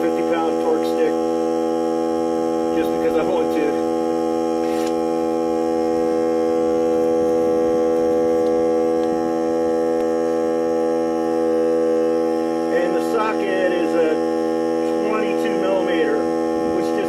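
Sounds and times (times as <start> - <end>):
air compressor humming: 0.0 - 17.0.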